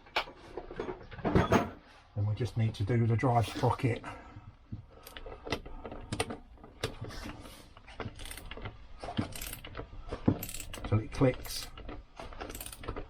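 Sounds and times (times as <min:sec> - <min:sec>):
ratchet wrench clicking: 0:08.2 - 0:08.5, 0:09.2 - 0:09.7, 0:10.4 - 0:10.8, 0:12.4 - 0:12.9.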